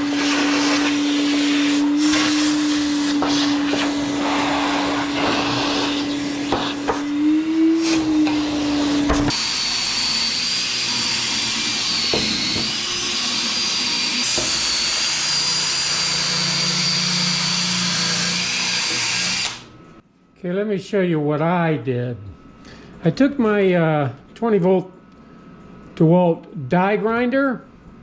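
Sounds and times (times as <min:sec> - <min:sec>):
die grinder grinding metal: 0:00.0 - 0:19.7.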